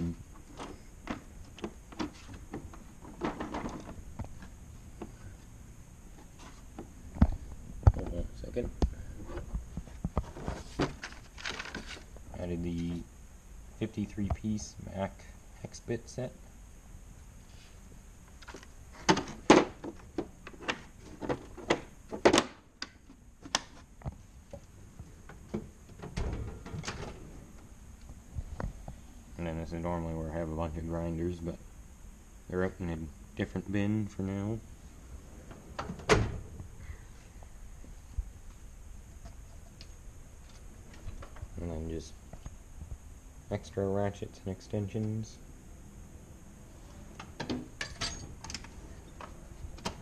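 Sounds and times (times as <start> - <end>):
tool chest drawers clicking and knocking: 0.6 - 4.0
tools clattering: 47.8 - 48.6.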